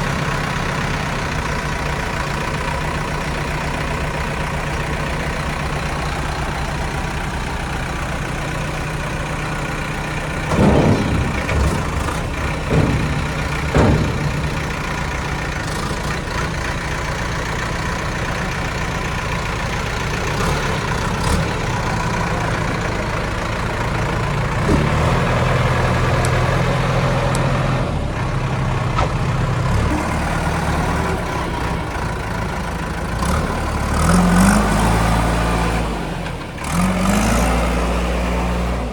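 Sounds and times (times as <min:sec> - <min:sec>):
diesel engine idling: 0:00.0 - 0:38.9
sharp knocks: 0:10.5 - 0:16.8.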